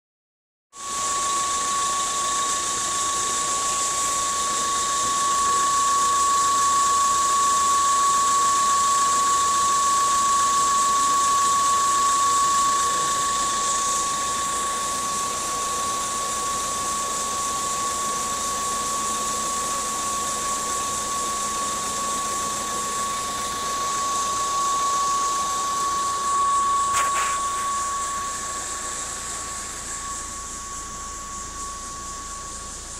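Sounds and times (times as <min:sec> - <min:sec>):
engine high-pitched whine: 0:00.8 - 0:32.9
engine hiss: 0:26.8 - 0:32.9
brief click: 0:26.9 - 0:27.7.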